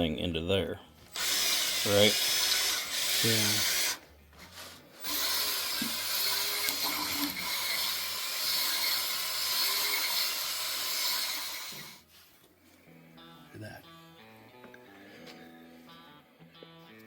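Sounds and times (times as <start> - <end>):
electric drill grinding whir: 1.1 - 12.1.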